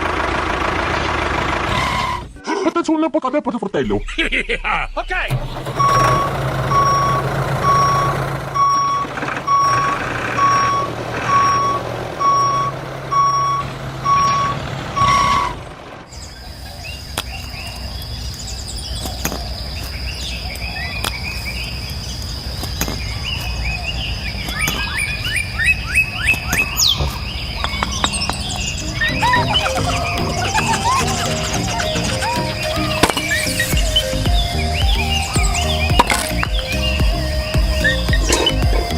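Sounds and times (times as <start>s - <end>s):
chirping: 3.8s - 38.9s
vehicle reversing alarm beeping: 3.9s - 19.0s, 19.6s - 38.9s
low engine hum: 5.0s - 17.2s, 17.8s - 38.9s
steady high tone: 28.7s - 38.9s.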